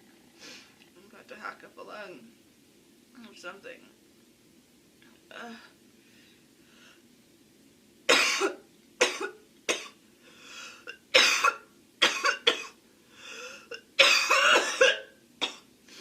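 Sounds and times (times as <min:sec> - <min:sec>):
girl coughing: 0:08.1 - 0:10.0, 0:10.9 - 0:12.8, 0:13.7 - 0:15.6
girl breathing in: 0:10.2 - 0:10.8.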